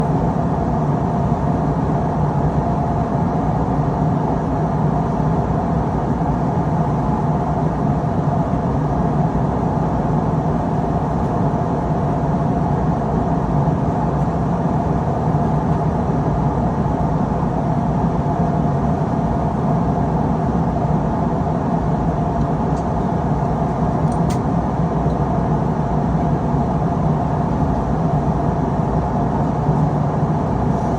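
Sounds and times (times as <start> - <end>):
low engine drone: 10.0 - 30.9
rush of airflow: 30.4 - 30.9.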